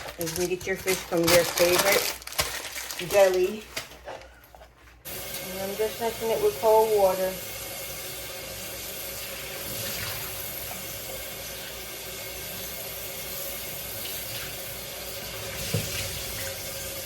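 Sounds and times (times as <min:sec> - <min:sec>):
tap water running: 0:05.0 - 0:17.0.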